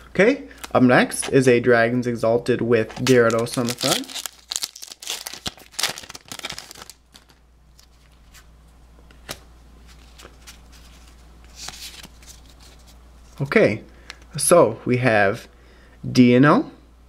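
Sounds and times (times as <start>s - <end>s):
wrapper tearing and crinkling: 2.9s - 8.0s.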